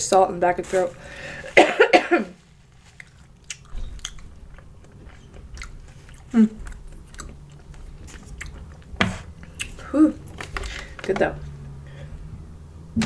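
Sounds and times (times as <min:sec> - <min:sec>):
chewing and biting: 0:02.8 - 0:10.4.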